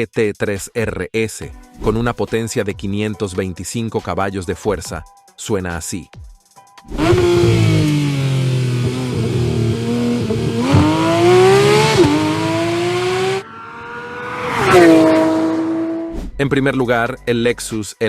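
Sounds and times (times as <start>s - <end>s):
car engine revving: 6.9s - 16.2s.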